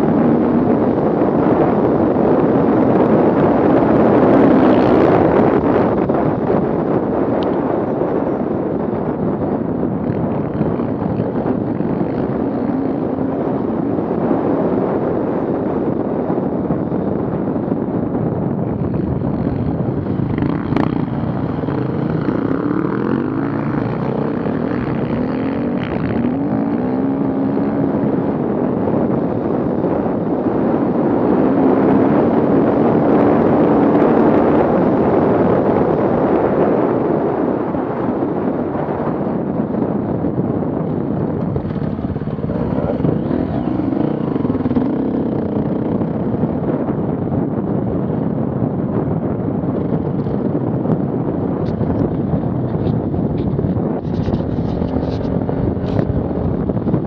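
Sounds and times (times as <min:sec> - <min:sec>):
wind noise on microphone: 0:00.0 - 0:57.0
vehicle engine revving: 0:18.7 - 0:28.5, 0:41.1 - 0:46.4.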